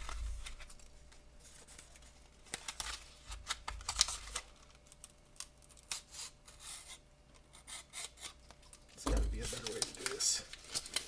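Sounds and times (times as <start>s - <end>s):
card pack wrapper crinkling: 1.5s - 6.3s, 8.1s - 11.0s.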